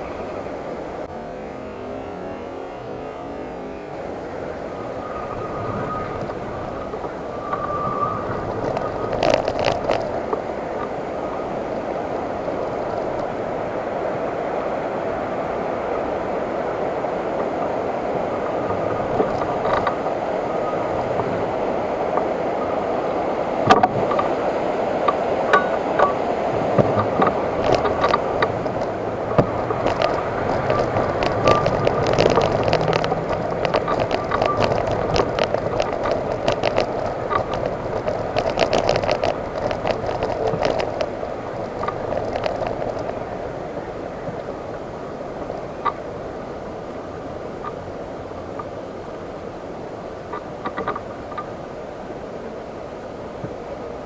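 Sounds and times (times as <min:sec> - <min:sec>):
electric wheelchair motor and tyres: 0:00.0 - 0:54.0
wheelchair rattling clicks: 0:04.5 - 0:11.0, 0:18.5 - 0:21.4, 0:25.1 - 0:43.2.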